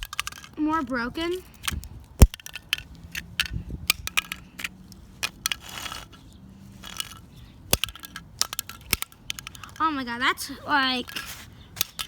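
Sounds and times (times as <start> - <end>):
stick striking plastic cube: 0.0 - 0.3
rustling scrapes: 4.6 - 7.4, 11.1 - 11.6.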